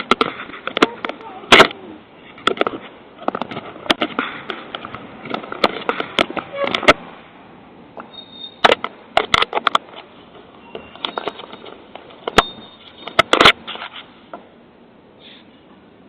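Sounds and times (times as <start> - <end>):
sharp clicks and knocks: 0.0 - 7.1, 8.0 - 14.5
low steady hiss: 0.0 - 16.0.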